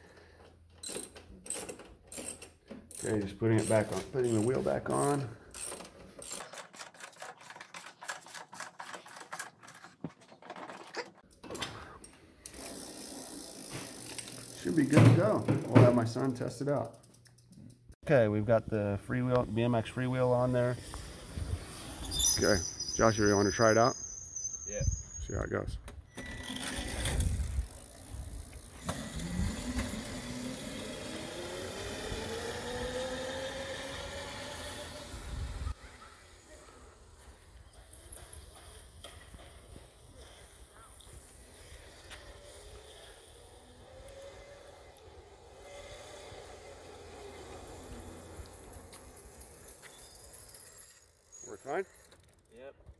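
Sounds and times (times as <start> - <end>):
bicycle ratchet clicking: 0.8 - 7.6, 12.4 - 14.9, 27.4 - 28.9, 45.6 - 52.6
electric motor and chain whine: 0.8 - 9.8, 12.4 - 15.4, 26.1 - 35.8, 37.6 - 52.5.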